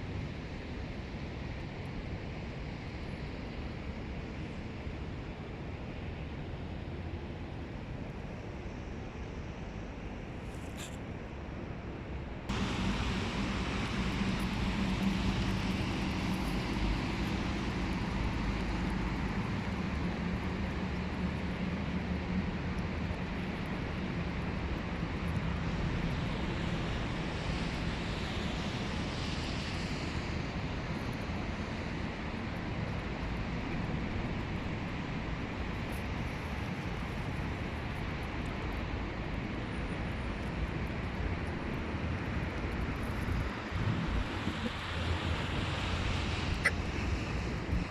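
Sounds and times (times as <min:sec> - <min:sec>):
broad hiss: 0:12.5 - 0:18.8
low mechanical drone: 0:12.5 - 0:30.6.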